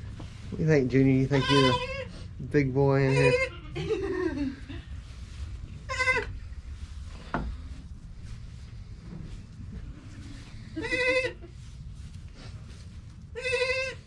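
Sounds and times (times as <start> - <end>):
goats bleating: 1.3 - 2.1, 3.1 - 4.1, 10.8 - 11.5, 13.4 - 14.0.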